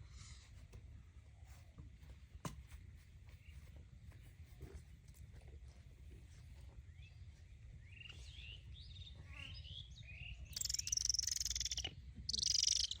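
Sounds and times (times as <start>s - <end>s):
birds chirping: 6.8s - 13.0s.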